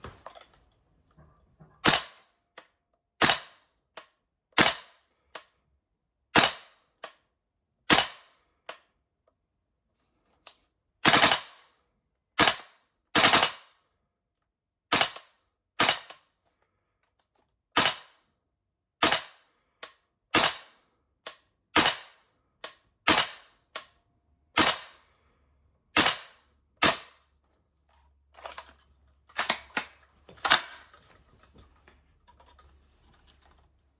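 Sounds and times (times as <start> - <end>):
airsoft rifle shots: 13.2 - 13.6, 21.8 - 22.2, 23.1 - 23.5, 24.6 - 25.0, 26.0 - 27.2.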